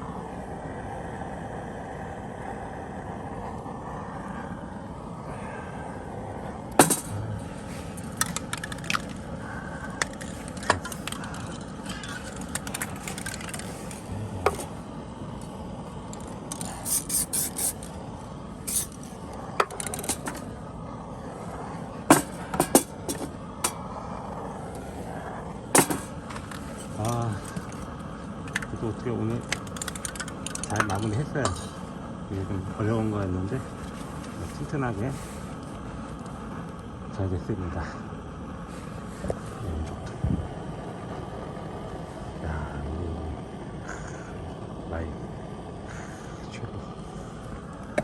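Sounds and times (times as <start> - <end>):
outdoor background hum: 0.0 - 48.0
tools and parts clicking: 8.1 - 9.2, 10.0 - 14.7, 16.1 - 18.0, 18.7 - 20.4, 25.8 - 27.8, 29.4 - 31.8.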